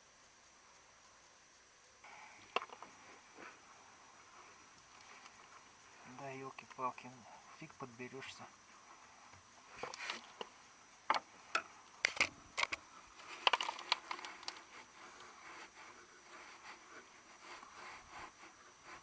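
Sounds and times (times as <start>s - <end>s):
hand tools clicking and tapping: 2.4s - 3.0s, 11.1s - 15.3s.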